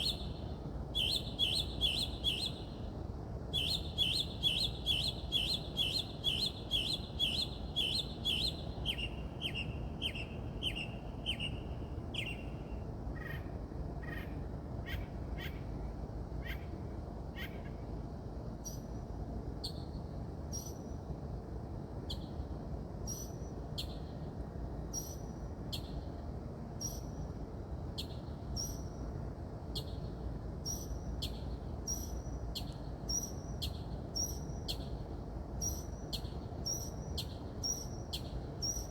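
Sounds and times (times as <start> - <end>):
songbird singing repeated notes: 0.0 - 2.8, 3.5 - 13.4, 30.6 - 35.0, 35.6 - 38.9.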